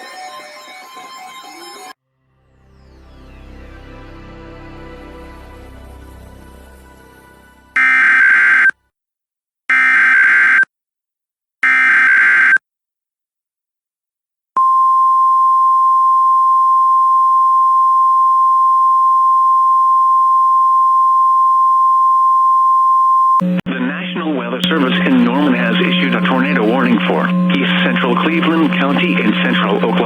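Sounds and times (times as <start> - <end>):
steady single-pitch attention tone: 0.0 - 8.6, 14.6 - 23.4
buzzy digital data header: 24.6 - 30.0.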